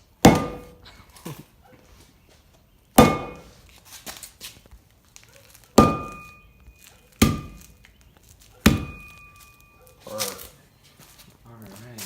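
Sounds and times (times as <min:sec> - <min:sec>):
hard thunks with ringing: 0:00.3 - 0:00.8, 0:03.0 - 0:03.5, 0:05.8 - 0:07.7, 0:08.6 - 0:09.8.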